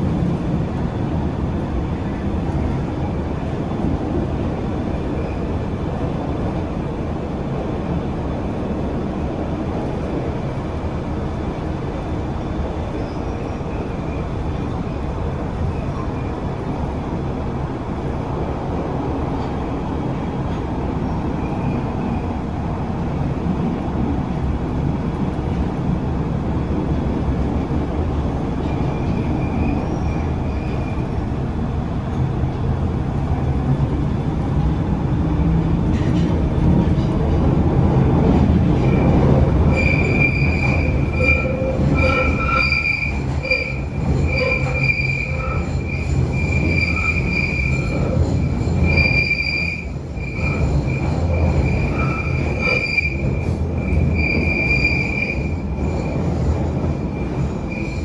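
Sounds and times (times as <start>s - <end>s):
train rumbling on track: 0.0s - 58.0s
faint high-pitched squeals: 39.7s - 58.0s.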